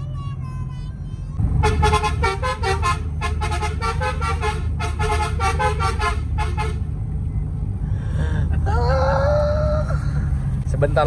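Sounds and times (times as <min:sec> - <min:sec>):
vehicle engine drone: 0:00.0 - 0:11.0
musical horn staccato tune: 0:01.6 - 0:06.8.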